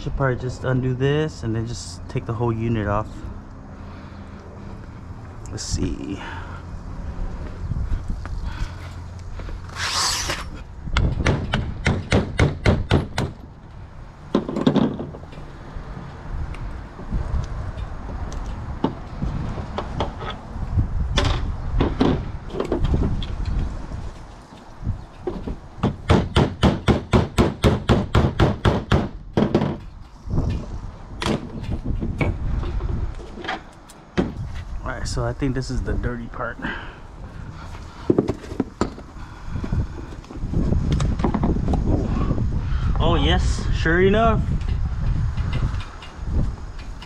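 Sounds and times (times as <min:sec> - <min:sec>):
brief scraping rush: 0:09.6 - 0:10.6.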